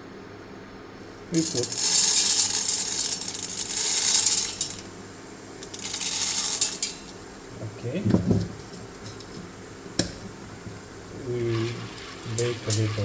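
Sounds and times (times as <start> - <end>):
popcorn kernels rattling in metal pot: 1.2 - 7.5, 10.9 - 13.0.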